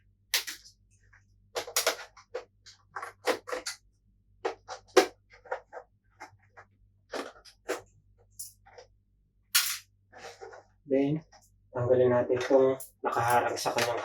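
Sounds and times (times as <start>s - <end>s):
plastic and metal parts clacking: 1.5s - 3.8s, 4.4s - 8.9s.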